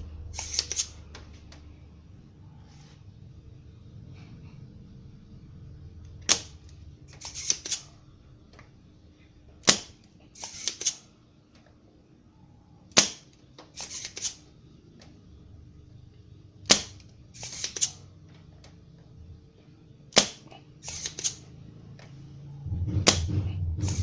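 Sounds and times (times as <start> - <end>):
faint steady hum: 0.0 - 10.4
sharp mechanical snaps: 6.2 - 7.9, 12.9 - 14.4, 20.1 - 21.4.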